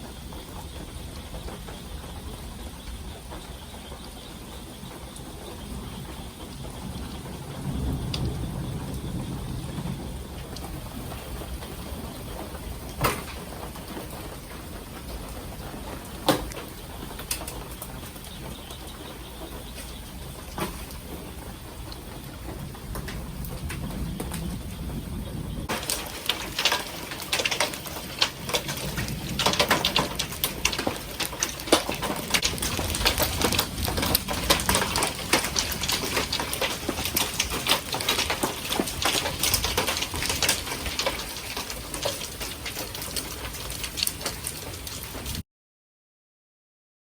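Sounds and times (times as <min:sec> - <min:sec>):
hail clattering on hard surfaces: 0:00.0 - 0:45.4
rain: 0:00.0 - 0:45.4.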